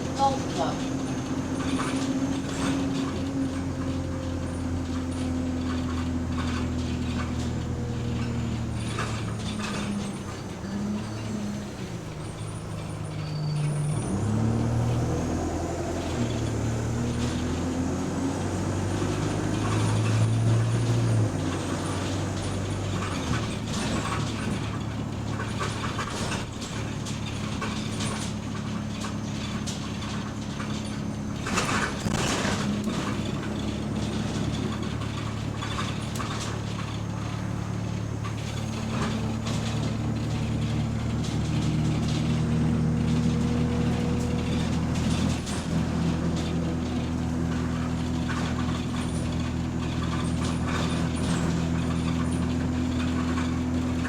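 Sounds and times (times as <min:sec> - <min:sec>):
bus engine accelerating: 0:00.0 - 0:54.0
rattling: 0:19.0 - 0:54.0.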